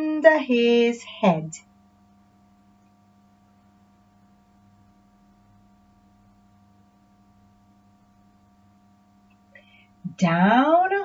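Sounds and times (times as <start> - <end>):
faint electrical hum: 0.0 - 11.0.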